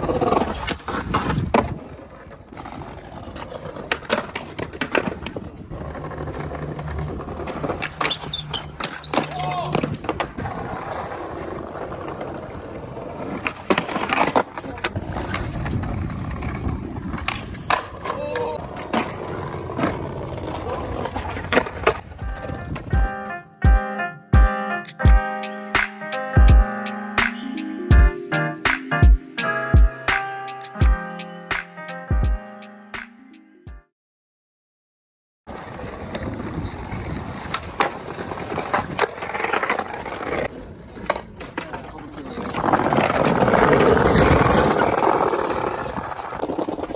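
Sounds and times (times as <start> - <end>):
skateboard clacks: 0.0 - 23.3, 35.5 - 46.9
skateboard rolling: 0.0 - 23.6, 35.5 - 46.9.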